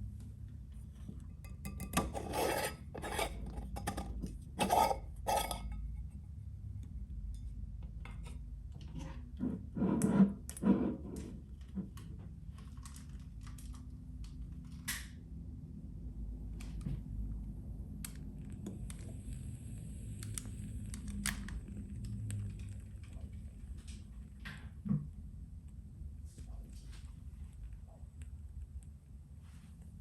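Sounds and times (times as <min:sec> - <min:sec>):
steady low hum: 0:00.0 - 0:11.5.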